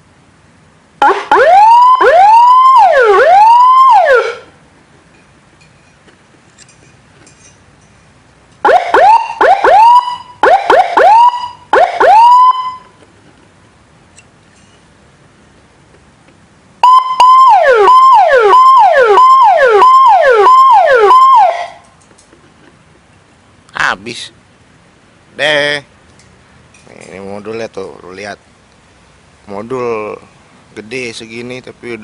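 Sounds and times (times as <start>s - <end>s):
electronic siren whoops and wails: 1.0s - 4.5s, 8.6s - 12.9s, 16.8s - 21.8s.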